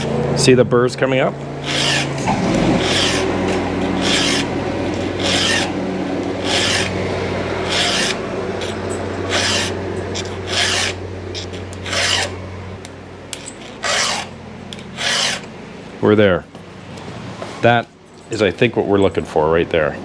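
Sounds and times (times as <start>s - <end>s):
file rasping on chainsaw chain: 1.6s - 3.3s, 3.9s - 5.8s, 6.4s - 7.0s, 7.6s - 12.3s, 13.8s - 14.3s, 15.0s - 15.5s.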